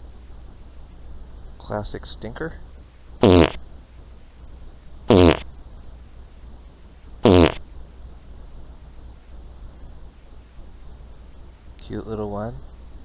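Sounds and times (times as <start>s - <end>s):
person farting: 3.2s - 3.6s, 5.1s - 5.5s, 7.2s - 7.6s.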